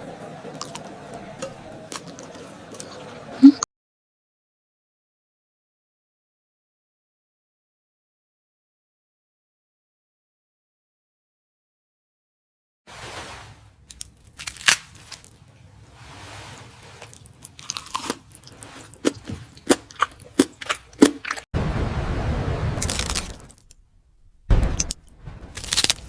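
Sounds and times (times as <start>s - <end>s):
crunchy bites and chewing: 13.9s - 15.4s, 17.0s - 21.5s, 22.8s - 23.6s, 24.7s - 26.0s.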